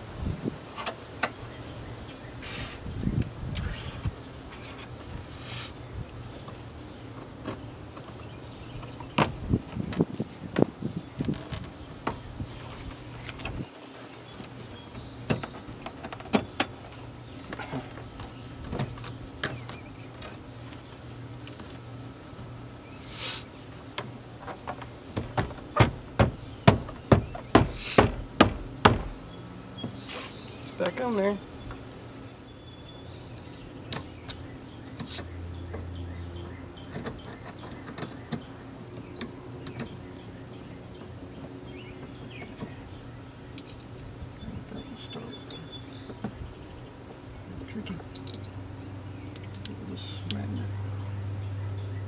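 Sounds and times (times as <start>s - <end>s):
sharp blows on door trim: 24.7s - 29.2s.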